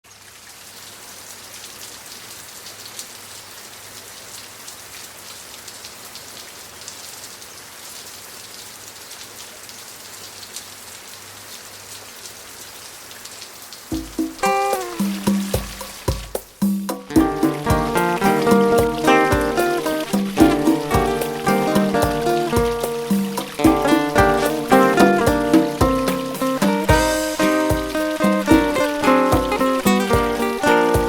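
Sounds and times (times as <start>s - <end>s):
waterfall splashing into pool: 0.1s - 31.0s
music: 13.9s - 31.0s.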